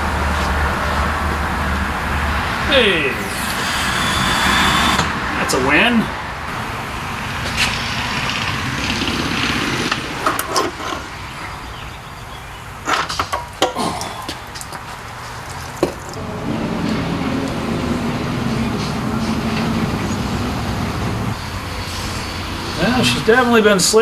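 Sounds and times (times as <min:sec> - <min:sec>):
low workshop hum: 0:16.1 - 0:23.7.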